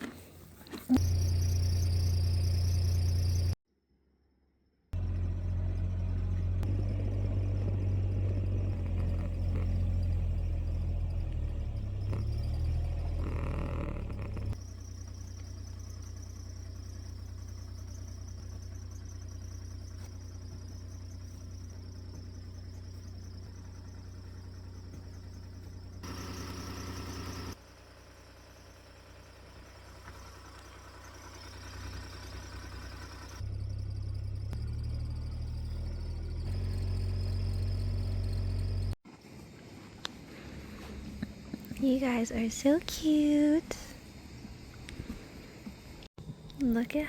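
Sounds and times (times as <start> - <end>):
vehicle engine rumble: 0.0 - 3.6, 5.0 - 47.0
high-pitched insect trill: 0.9 - 3.6, 8.7 - 39.0.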